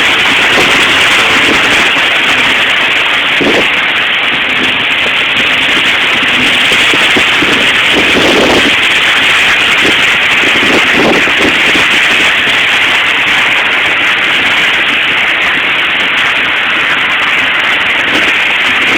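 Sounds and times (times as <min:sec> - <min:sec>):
wind and rain rushing: 0:00.0 - 0:18.9.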